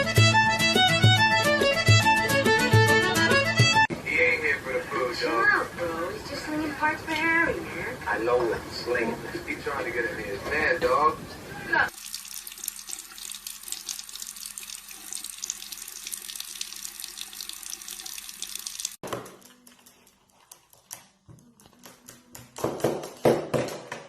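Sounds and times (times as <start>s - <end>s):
running water hissing: 11.7s - 19.0s.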